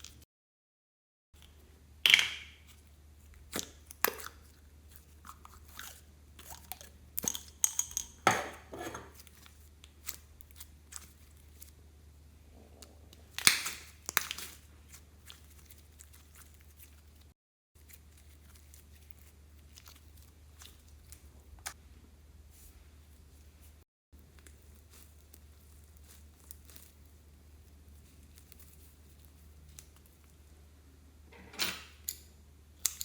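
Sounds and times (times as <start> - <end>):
slime sticky crackles and pops: 13.3 - 16.6, 24.3 - 27.2.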